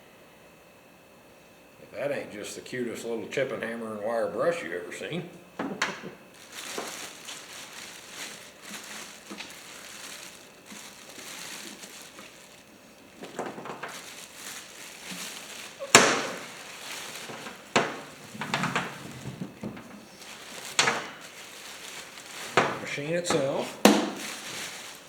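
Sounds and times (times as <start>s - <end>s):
items knocking down on surface: 5.6s - 12.4s, 13.2s - 25.0s
plastic and cardboard rustling: 5.6s - 25.0s.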